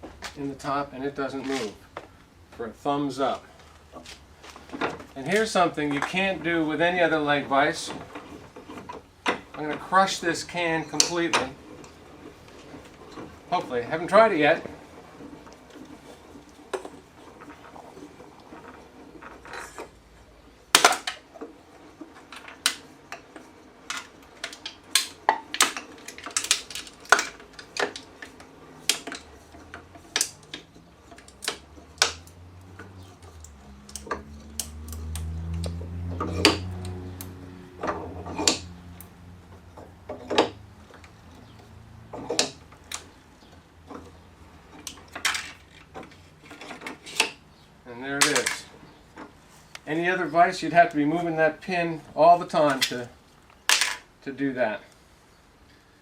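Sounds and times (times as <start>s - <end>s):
can crushing in a vise: 7.6s - 38.8s
sharp metallic clicks and cracks: 20.7s - 47.4s, 48.2s - 50.0s, 52.4s - 54.1s.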